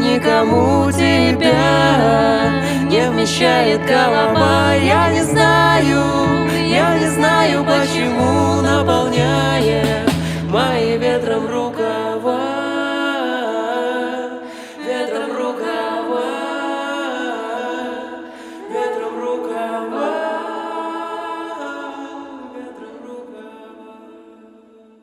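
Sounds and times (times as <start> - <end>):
wordless sung vocals: 0.0 - 25.0.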